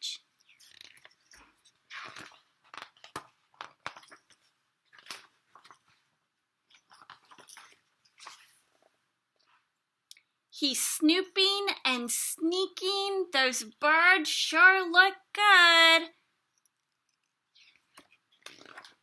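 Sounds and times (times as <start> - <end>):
paper rustling: 0.4 - 6.0.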